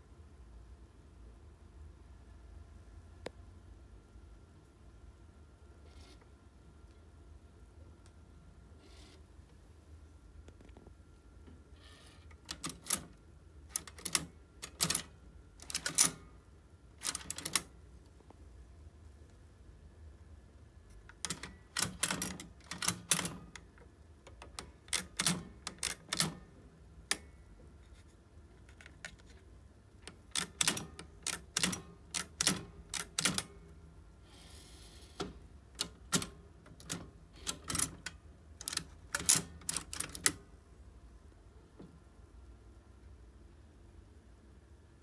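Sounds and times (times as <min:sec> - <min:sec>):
typewriter clacking: 0:12.3 - 0:16.3, 0:17.0 - 0:17.7, 0:21.1 - 0:27.3, 0:28.6 - 0:29.4, 0:30.0 - 0:33.6, 0:35.2 - 0:40.4.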